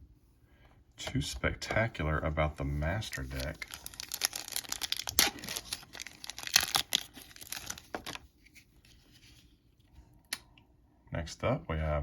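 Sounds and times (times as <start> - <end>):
wrapper crinkling and tearing: 3.0 - 8.2.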